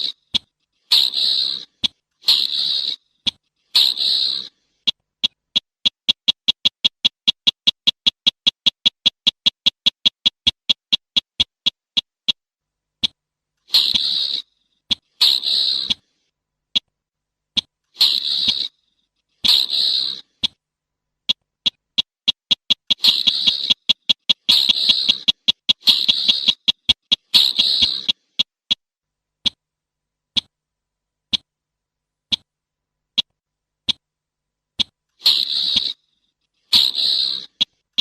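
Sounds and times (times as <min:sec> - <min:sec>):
bird harsh rasping calls: 0:00.0 - 0:12.4, 0:13.0 - 0:16.2, 0:17.6 - 0:20.6, 0:21.3 - 0:28.8, 0:35.2 - 0:38.0
bird ticking calls: 0:00.0 - 0:16.1, 0:16.7 - 0:16.9, 0:17.5 - 0:20.6, 0:21.2 - 0:28.8, 0:30.3 - 0:30.5, 0:32.3 - 0:32.5, 0:34.8 - 0:38.0.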